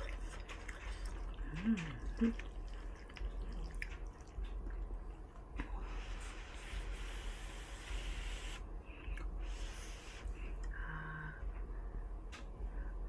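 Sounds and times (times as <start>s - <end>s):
steady low hum: 0.0s - 13.0s
airy breath hiss: 5.8s - 10.5s.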